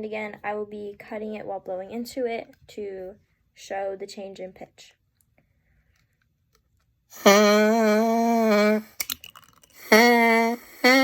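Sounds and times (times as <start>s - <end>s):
straw kazoo buzzing: 7.1s - 9.2s, 9.8s - 11.0s.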